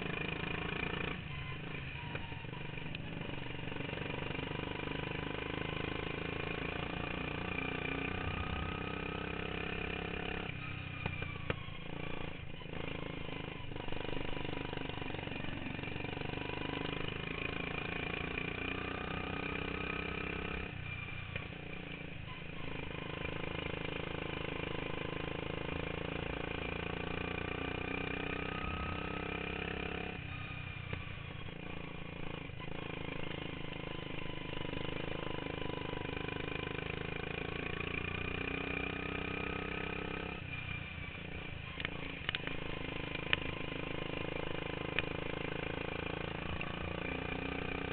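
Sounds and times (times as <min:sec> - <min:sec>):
lawn mower engine running hard: 0:21.6 - 0:30.6, 0:31.2 - 0:47.9.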